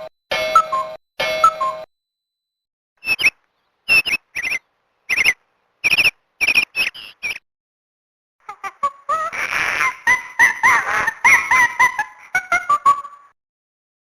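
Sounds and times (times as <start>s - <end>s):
phone ringtone chirps: 0.0s - 1.9s.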